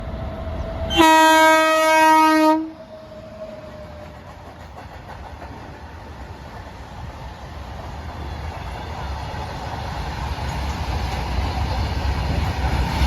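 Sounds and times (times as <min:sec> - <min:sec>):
train running noise: 0:00.0 - 0:13.0
train horn blast: 0:00.9 - 0:03.0.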